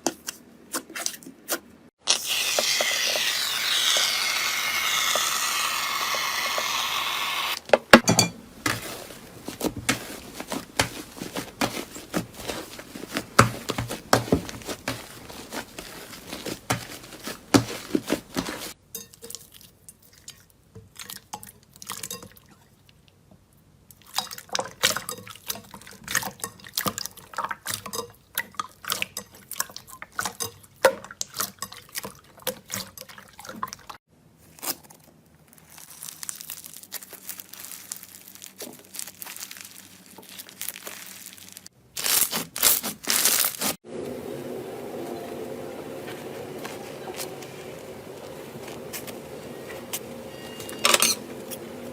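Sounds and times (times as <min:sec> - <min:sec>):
slime squishing: 0:08.5 - 0:18.8, 0:34.4 - 0:43.8.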